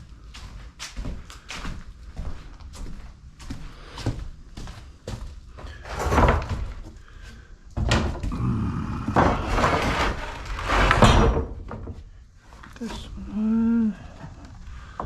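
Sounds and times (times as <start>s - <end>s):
wooden boards knocking and scraping: 5.6s - 6.9s, 9.0s - 12.1s.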